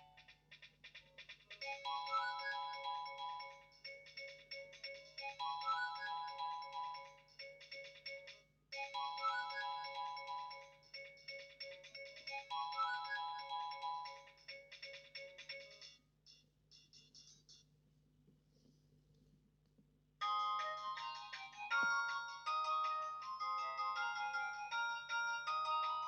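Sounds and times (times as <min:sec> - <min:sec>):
polyphonic phone ringtone: 0:01.6 - 0:15.8, 0:20.2 - 0:26.0.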